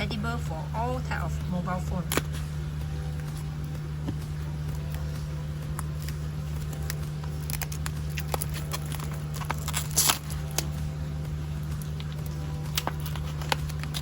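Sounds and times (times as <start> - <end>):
steady low hum: 0.0 - 14.0
packaging crinkling rustle: 5.7 - 10.8, 11.8 - 14.0.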